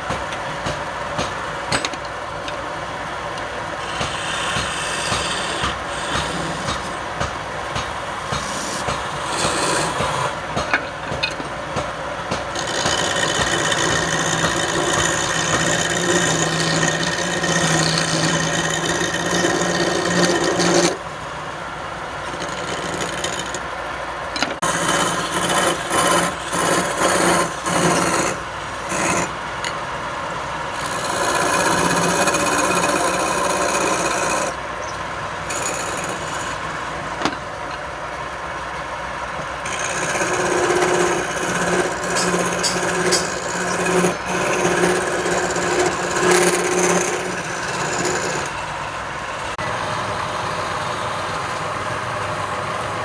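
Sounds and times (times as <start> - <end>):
wood lathe motor hum: 3.8 - 7.1, 8.1 - 10.4, 12.5 - 21.0, 22.2 - 23.6, 24.6 - 29.8, 30.7 - 34.6, 35.4 - 37.4, 39.6 - 48.8
tool rasping on spinning wood: 3.8 - 10.7, 12.3 - 21.0, 22.2 - 23.6, 24.6 - 29.8, 30.7 - 34.6, 35.4 - 36.7, 39.6 - 48.7.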